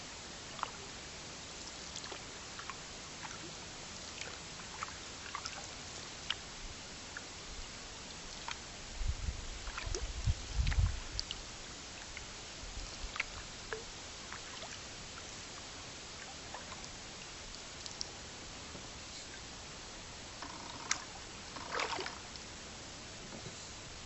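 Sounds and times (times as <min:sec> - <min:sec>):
water hissing from paddling: 0:00.2 - 0:18.3, 0:19.0 - 0:22.4
water drips: 0:04.0 - 0:06.5, 0:09.6 - 0:18.2, 0:20.7 - 0:22.5.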